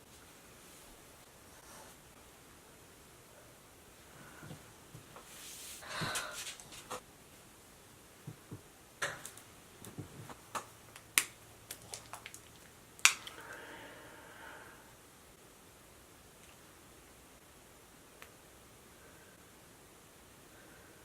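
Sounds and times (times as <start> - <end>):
soft rustling: 4.0 - 7.0.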